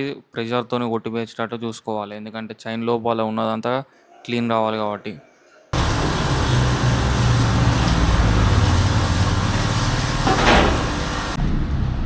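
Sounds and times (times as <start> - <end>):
hiss of water spray: 5.8 - 11.4
pressure washer pump humming: 5.8 - 11.4.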